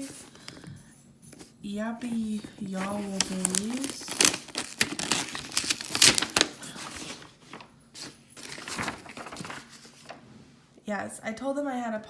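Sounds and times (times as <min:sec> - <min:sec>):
paper packaging crinkling: 0:00.0 - 0:00.7, 0:01.4 - 0:10.2.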